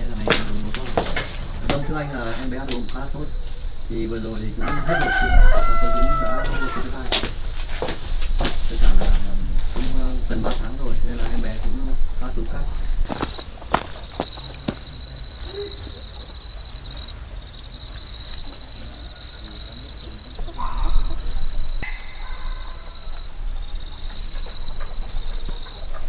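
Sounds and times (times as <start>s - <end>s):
chicken calling: 0.0s - 7.1s, 11.8s - 26.0s
steady high-pitched trill: 19.7s - 26.0s.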